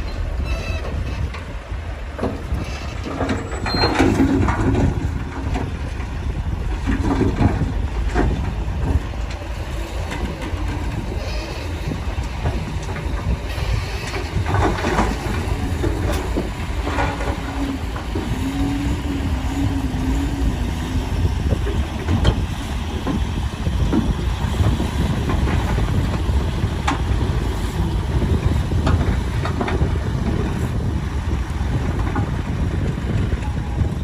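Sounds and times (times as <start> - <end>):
metallic clanks and squeals: 0.0 - 6.2, 10.1 - 22.6
diesel engine rumbling: 0.0 - 34.0.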